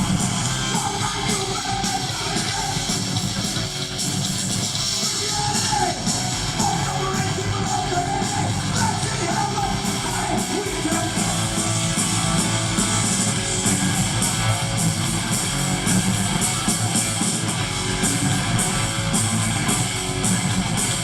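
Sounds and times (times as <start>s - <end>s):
shouted vocals: 0.0s - 3.1s, 4.9s - 11.8s
punk band playing: 0.0s - 21.0s.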